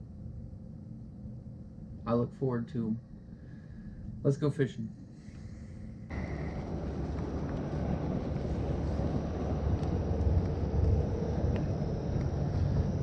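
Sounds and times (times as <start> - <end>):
car rumbling while driving: 6.1 - 13.0
road noise: 6.1 - 13.0
wind noise: 6.1 - 13.0.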